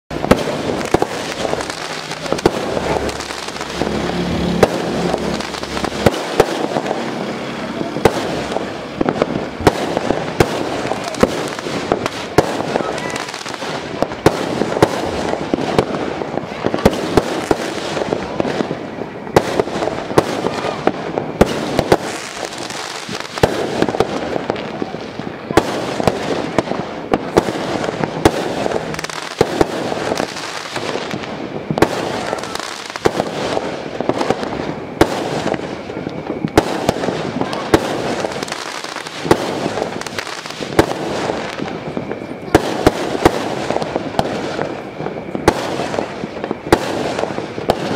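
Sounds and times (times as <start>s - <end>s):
fireworks bangs and crackles: 0.1s - 47.9s.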